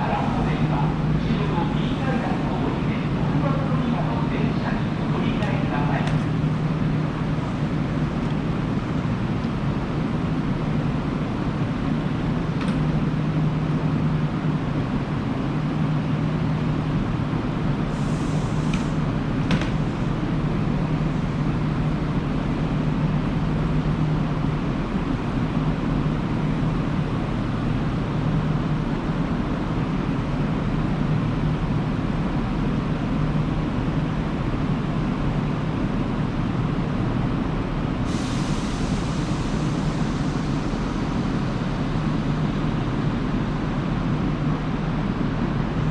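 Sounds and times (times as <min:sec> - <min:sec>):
air hissing: 0:17.9 - 0:19.1, 0:38.1 - 0:41.7.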